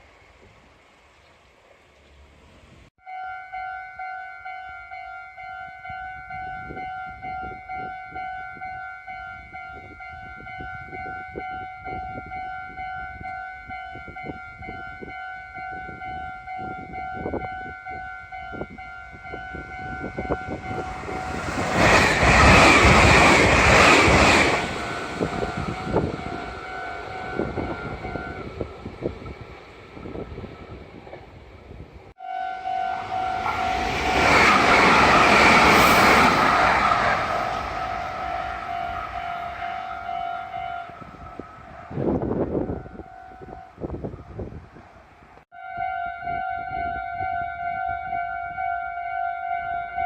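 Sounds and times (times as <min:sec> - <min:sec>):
electric train rushing past: 0:06.4 - 0:44.8
level crossing alarm ringing: 0:24.8 - 0:28.6.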